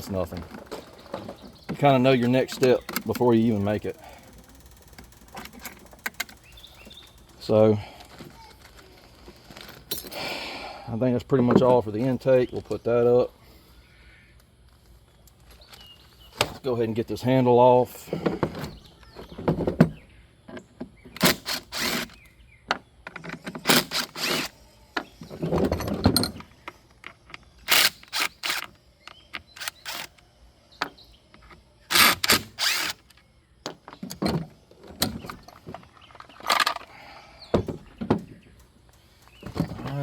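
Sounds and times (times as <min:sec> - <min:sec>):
short rattling bursts: 0:00.1 - 0:07.9, 0:21.2 - 0:22.2, 0:29.6 - 0:30.2, 0:31.9 - 0:33.1
tools clicking and knocking: 0:02.5 - 0:07.0.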